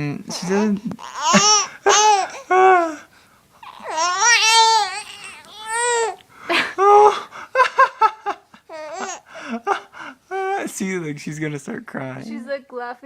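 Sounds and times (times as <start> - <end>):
baby babbling: 1.0 - 6.2, 8.7 - 9.2.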